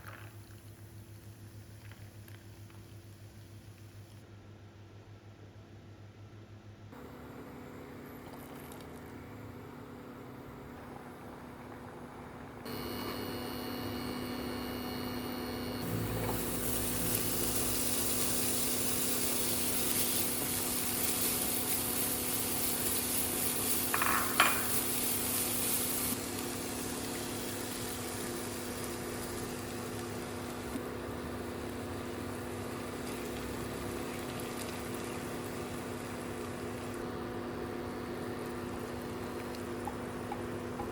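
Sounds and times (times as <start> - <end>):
steady hum: 6.8 - 40.9
food sizzling in a frying pan: 15.8 - 37.0.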